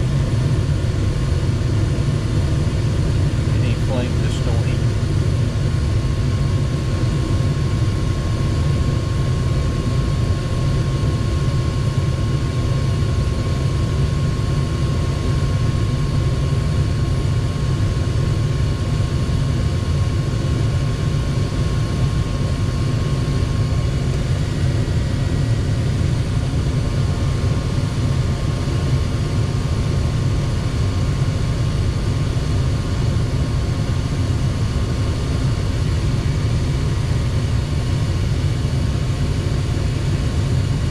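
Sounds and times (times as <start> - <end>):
faint steady whine: 0.0 - 40.9
gas furnace rumbling: 3.5 - 4.8.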